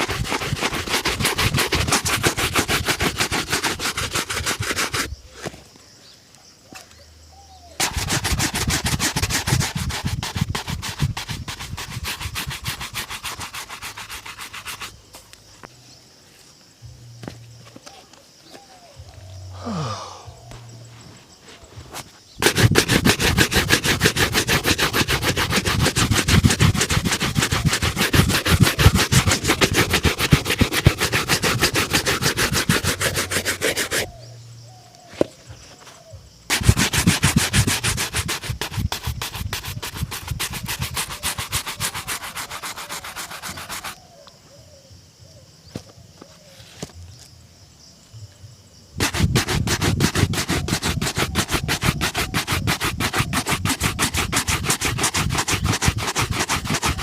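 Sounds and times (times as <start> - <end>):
shoe polishing strokes: 0.0 - 5.6, 7.8 - 15.0, 21.6 - 34.2, 36.5 - 44.0, 49.0 - 57.0.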